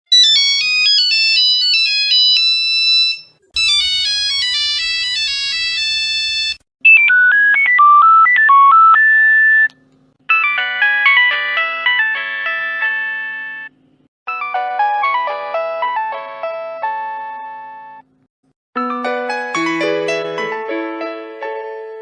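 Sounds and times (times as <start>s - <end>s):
electronic phone ringtone melodies: 0.1s - 9.7s, 10.3s - 13.7s, 14.3s - 18.0s.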